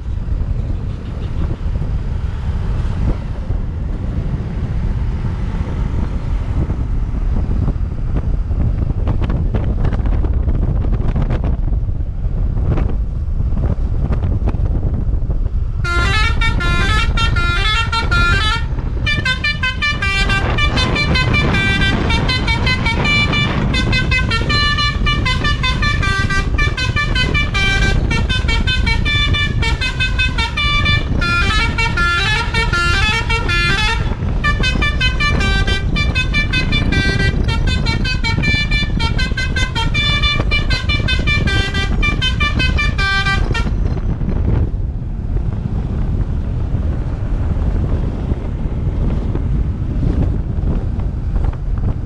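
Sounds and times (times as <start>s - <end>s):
steady low rumble: 0.0s - 52.0s
musical bus horn melodies: 15.8s - 43.9s.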